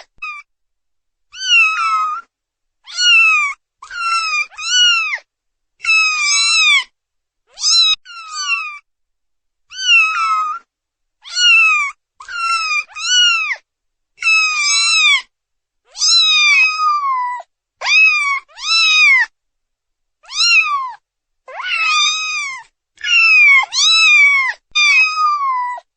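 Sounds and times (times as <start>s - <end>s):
kittens meowing: 1.4s - 5.2s, 5.8s - 6.9s, 7.5s - 8.8s, 9.7s - 13.6s, 14.2s - 15.3s, 15.9s - 19.3s, 20.3s - 25.9s.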